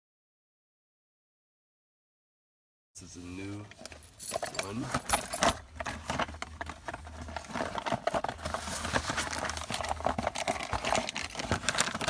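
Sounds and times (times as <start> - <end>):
lock cylinder and keys clicking: 3.8 - 5.6.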